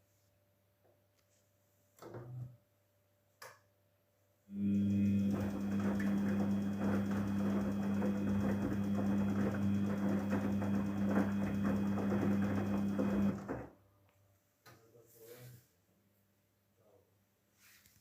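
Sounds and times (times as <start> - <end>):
washing machine humming: 4.5 - 13.8
water churning: 5.2 - 13.5.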